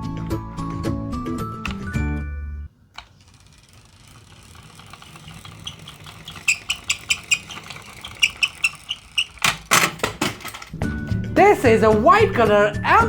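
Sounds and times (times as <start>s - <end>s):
toy bus rolling rumble: 0.0s - 10.9s
small clicks and rattles: 2.8s - 10.8s.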